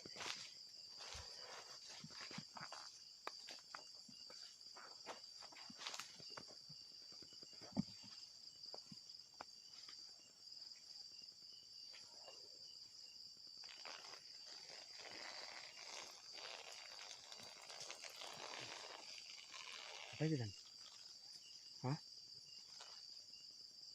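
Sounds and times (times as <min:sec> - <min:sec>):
rustling underfoot: 0:00.0 - 0:10.1
crickets trilling: 0:00.0 - 0:23.9.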